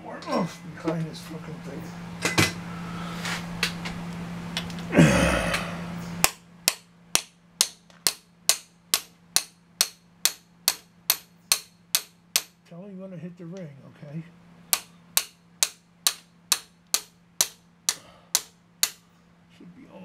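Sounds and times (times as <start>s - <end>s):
steady hum: 0.0s - 20.0s
hammer tapping on metal piston: 6.2s - 12.6s, 14.7s - 19.0s.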